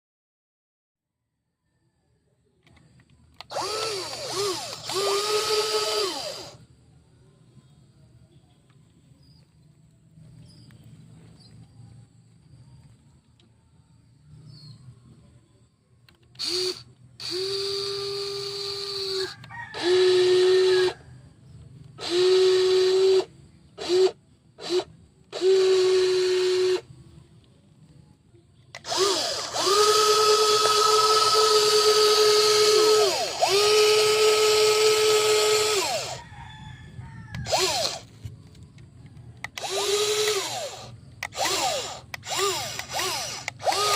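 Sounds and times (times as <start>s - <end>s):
gear motor grinding whine: 3.3s - 6.6s, 16.3s - 21.0s, 21.9s - 26.9s, 28.7s - 36.2s, 37.3s - 43.9s.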